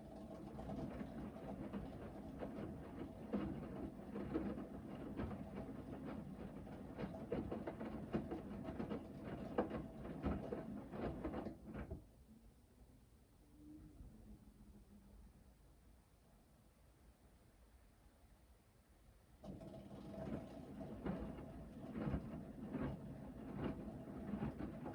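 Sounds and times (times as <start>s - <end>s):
washing machine motor humming: 19.5s - 24.9s.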